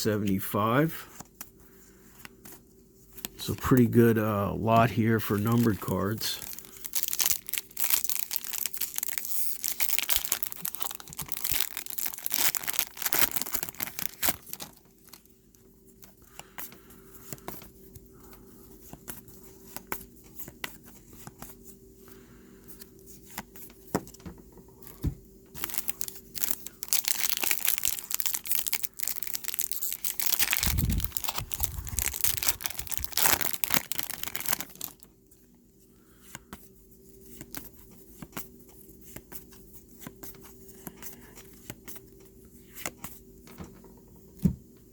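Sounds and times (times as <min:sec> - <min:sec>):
wrappers being torn and crinkled: 0:05.5 - 0:15.3, 0:25.6 - 0:35.1.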